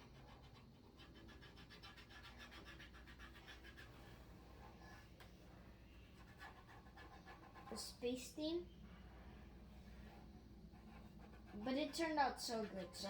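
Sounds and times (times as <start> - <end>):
marker scratching on plastic: 0.0 - 5.0, 6.2 - 8.0, 10.7 - 13.0.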